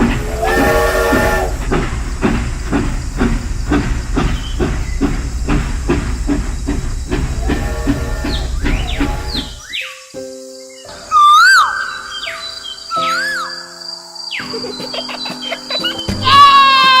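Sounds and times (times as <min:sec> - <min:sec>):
train whistle blast: 0:00.0 - 0:01.7, 0:07.4 - 0:09.7
steam train chuffing: 0:00.0 - 0:09.7.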